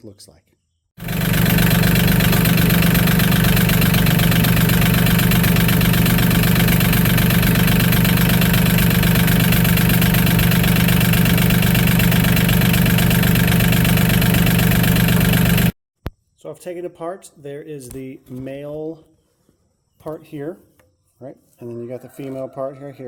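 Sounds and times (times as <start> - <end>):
tractor diesel engine running: 1.0 - 15.8.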